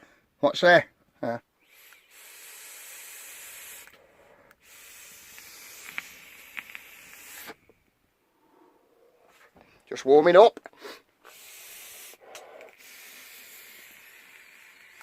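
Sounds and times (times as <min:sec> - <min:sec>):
vape coil sizzling: 0:01.6 - 0:07.7, 0:11.2 - 0:15.0.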